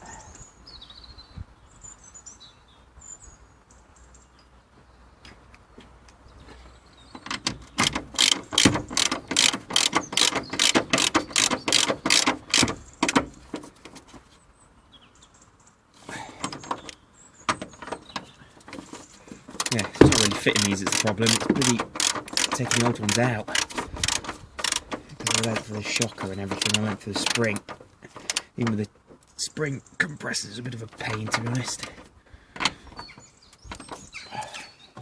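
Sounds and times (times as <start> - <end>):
socket ratchet clicking: 7.2 - 13.3, 19.6 - 28.5.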